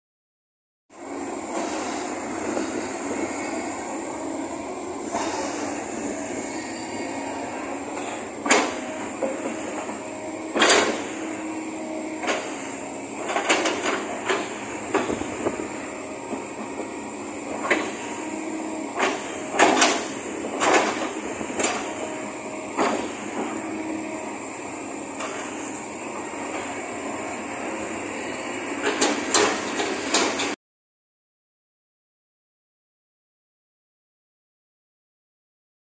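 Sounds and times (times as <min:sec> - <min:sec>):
excavator machine noise: 0:00.9 - 0:30.6.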